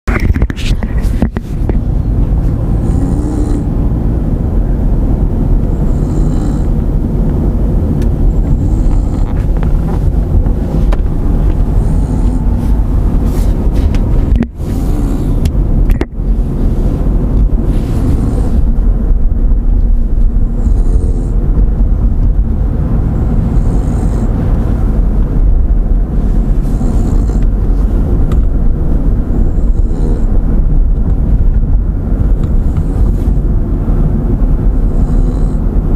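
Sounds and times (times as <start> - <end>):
loud low rumble: 0.0 - 35.9
person snoring: 2.7 - 3.8, 5.7 - 6.8, 8.3 - 9.5, 11.6 - 12.8, 14.6 - 15.4, 17.8 - 18.7, 20.4 - 21.4, 23.3 - 24.4, 26.6 - 27.5, 29.3 - 30.3, 34.8 - 35.7.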